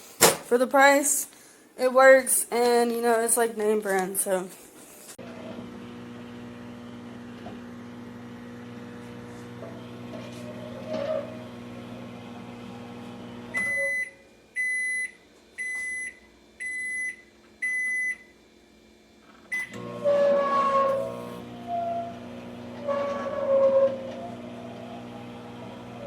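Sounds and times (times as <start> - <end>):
microwave oven humming: 5.2 - 26.0
microwave beeps: 11.4 - 18.3, 19.5 - 26.0.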